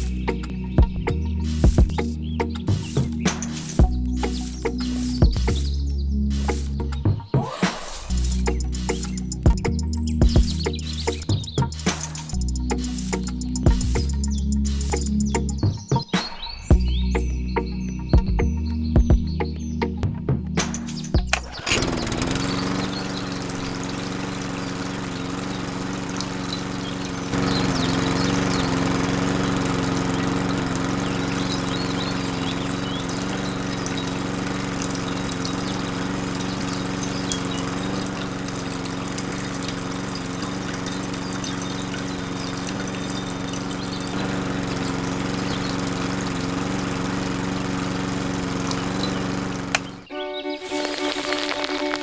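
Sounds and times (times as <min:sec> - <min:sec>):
small electric motor humming: 0:21.3 - 0:52.0
water pouring and trickling: 0:21.3 - 0:52.0.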